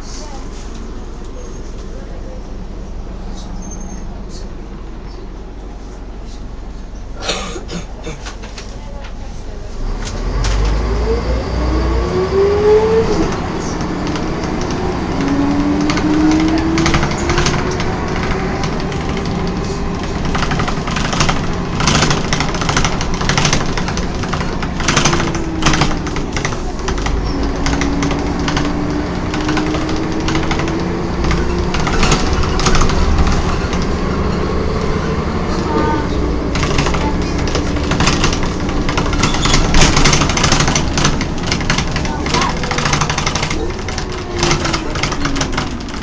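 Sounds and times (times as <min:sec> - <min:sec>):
engine low rumble: 0:00.0 - 0:46.0
bus gearbox whining: 0:12.7 - 0:35.0, 0:36.3 - 0:46.0
bus body knocks and rattles: 0:12.9 - 0:46.0.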